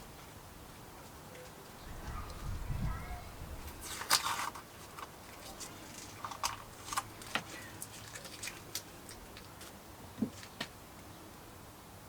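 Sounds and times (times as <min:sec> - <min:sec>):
small objects clicking and tapping: 0:03.8 - 0:10.7.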